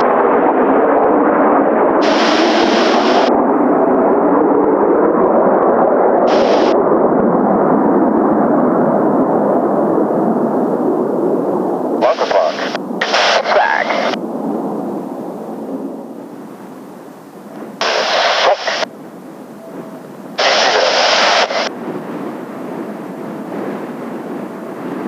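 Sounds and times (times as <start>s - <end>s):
jet engines roaring: 0.0s - 25.0s
high hiss bursts: 2.0s - 3.3s, 6.3s - 6.8s.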